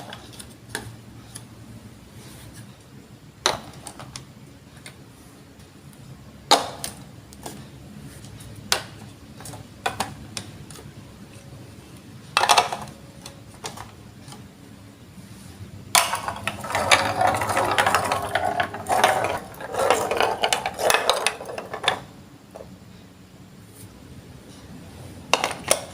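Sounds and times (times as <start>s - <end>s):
plastic bricks clicking and clattering: 12.3s - 14.4s, 15.9s - 22.7s, 25.3s - 25.9s.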